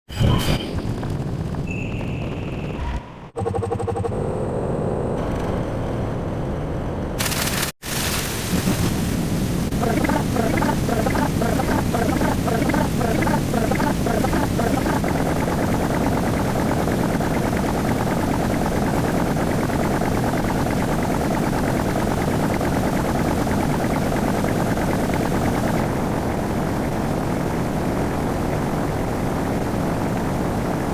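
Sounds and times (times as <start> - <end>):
loud steady rumbling: 8.6 - 30.9.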